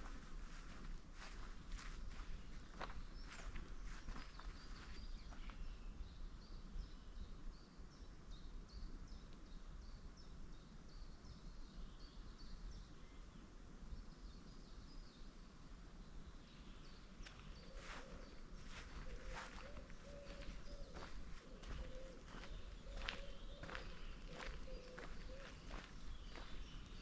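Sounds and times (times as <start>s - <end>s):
footsteps on forest trail: 0.0s - 5.8s, 17.2s - 27.0s.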